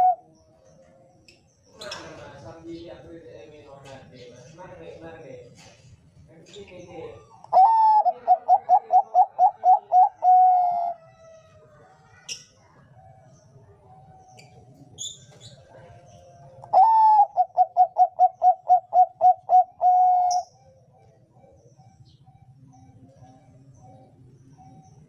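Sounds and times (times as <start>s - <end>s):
dove cooing: 0.0s - 1.2s, 7.0s - 25.0s.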